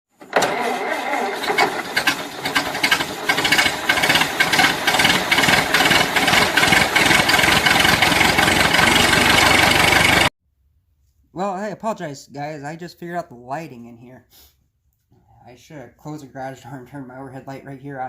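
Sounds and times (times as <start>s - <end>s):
loud engine running: 0.4s - 10.3s.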